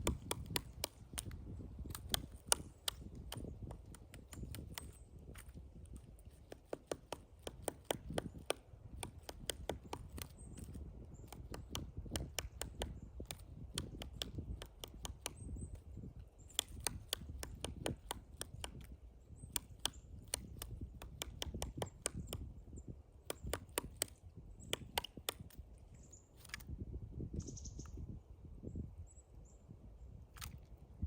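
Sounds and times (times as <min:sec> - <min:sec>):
woodpecker knocking on wood: 0:00.0 - 0:25.7.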